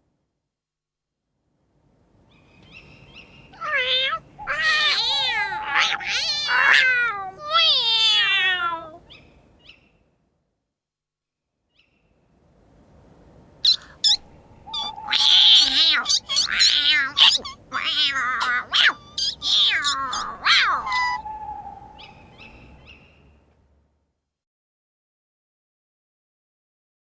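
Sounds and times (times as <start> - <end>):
cats meowing and yowling: 3.5 - 9.2, 13.6 - 22.1.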